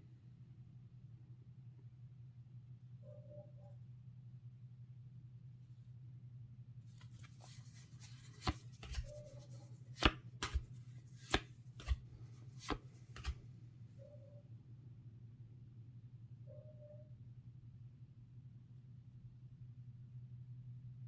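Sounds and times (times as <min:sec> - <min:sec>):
card packaging clicks and taps: 0:07.2 - 0:13.4.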